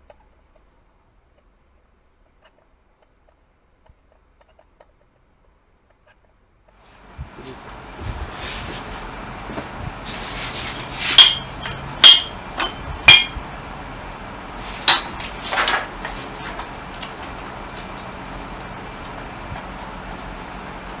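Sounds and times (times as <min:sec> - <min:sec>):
hammer tapping on metal: 0:07.2 - 0:13.6, 0:14.4 - 0:21.0.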